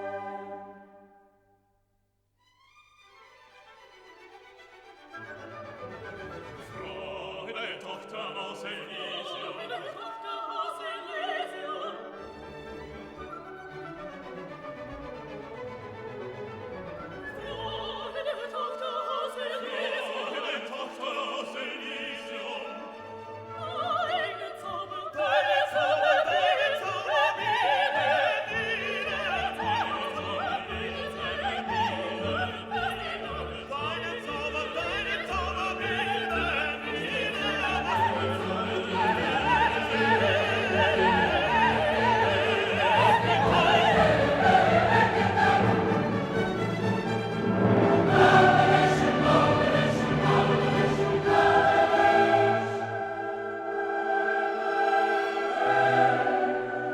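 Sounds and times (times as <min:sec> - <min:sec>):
operatic singing with orchestra: 0:00.0 - 0:01.2, 0:03.5 - 0:56.9.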